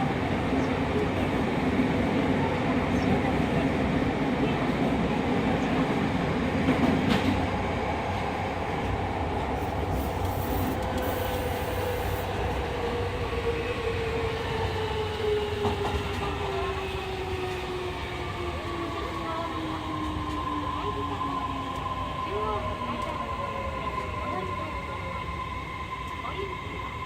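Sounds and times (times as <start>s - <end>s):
wheels rumbling on rail: 0.0s - 25.2s.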